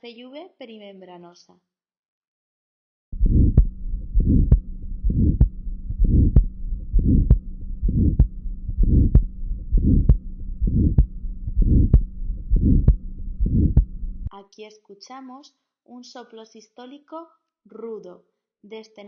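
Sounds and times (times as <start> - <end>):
faint steady hum: 3.2 - 14.3
heartbeat with harsh murmur: 3.2 - 14.3.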